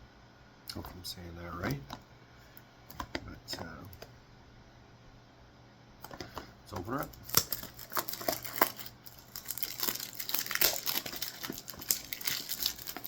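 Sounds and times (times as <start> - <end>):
packaging crinkling and tearing: 6.9 - 13.0.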